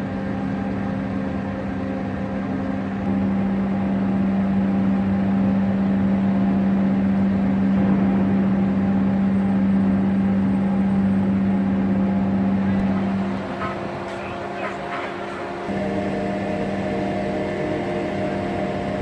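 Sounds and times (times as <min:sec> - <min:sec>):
diesel engine humming: 0:00.0 - 0:19.0.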